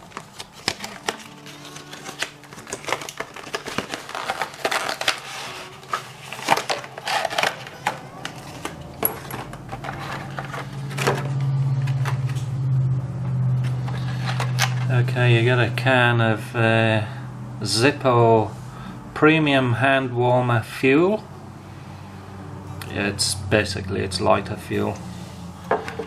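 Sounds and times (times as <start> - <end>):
plastic and cardboard crinkling: 0.0 - 12.4
steady low hum: 0.0 - 26.0.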